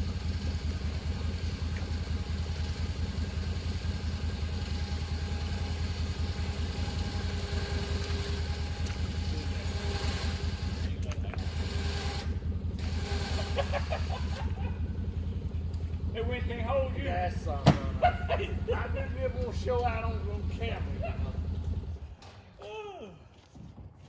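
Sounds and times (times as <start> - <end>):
electric winch hauling cable: 0.0 - 15.7
engine idling: 0.0 - 22.4.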